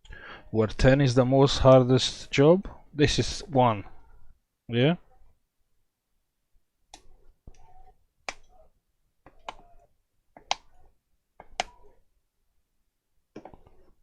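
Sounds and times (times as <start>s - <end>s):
sharp plastic clicks: 11.4s - 11.8s.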